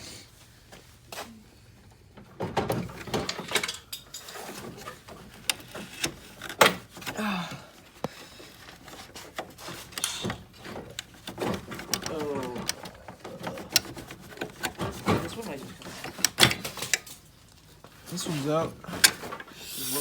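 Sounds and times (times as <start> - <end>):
tools and car parts knocking: 9.4 - 17.1.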